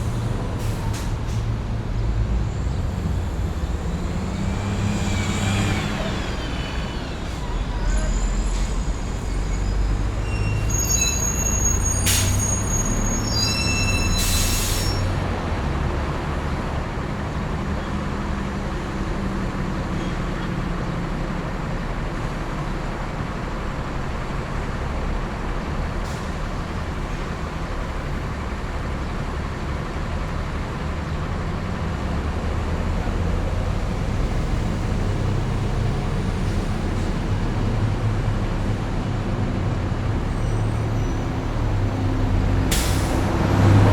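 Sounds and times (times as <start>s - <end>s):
passing vehicles rumbling: 0.0s - 13.3s, 13.9s - 43.9s
high-pitched brake squeal: 4.4s - 15.2s, 40.3s - 42.1s.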